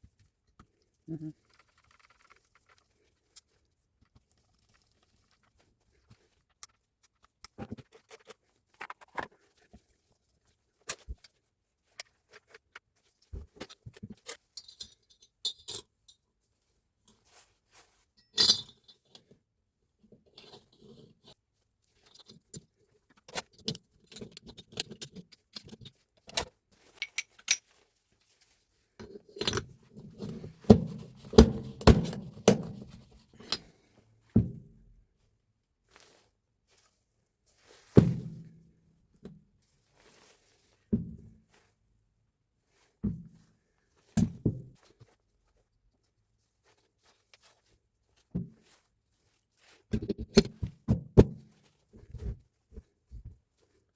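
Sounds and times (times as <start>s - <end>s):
metal parts and tools clinking: 13.6s - 16.2s, 18.2s - 19.0s, 23.3s - 27.8s, 29.0s - 33.8s
knocks and rattles: 30.2s - 33.7s.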